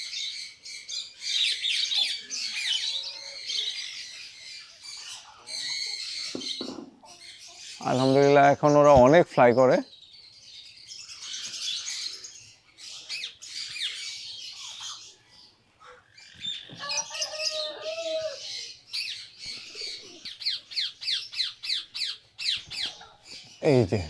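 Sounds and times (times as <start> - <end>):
birds chirping: 0.0 - 24.0
wavering squawk: 15.8 - 23.8.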